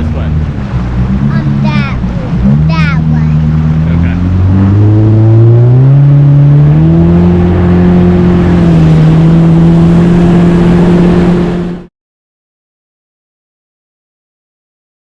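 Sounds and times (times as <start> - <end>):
watercraft engine accelerating: 0.0 - 11.9
wind and water rushing: 0.0 - 11.9.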